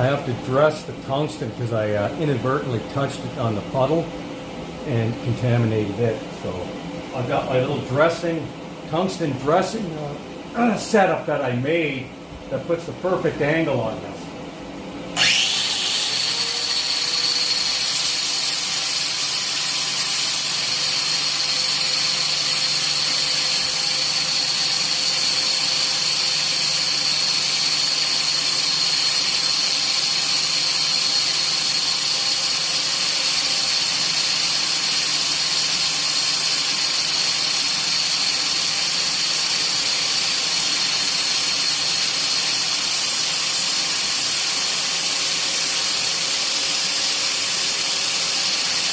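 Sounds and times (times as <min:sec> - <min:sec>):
electric grinder whining: 0:15.2 - 0:48.9.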